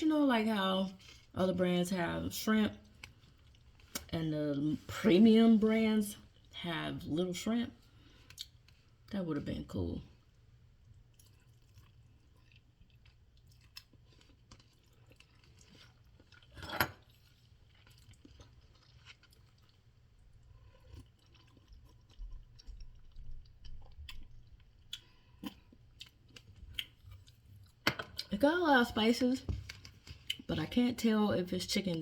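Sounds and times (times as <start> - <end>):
person chewing noodles: 2.9 - 4.1, 7.9 - 9.1, 10.2 - 28.3.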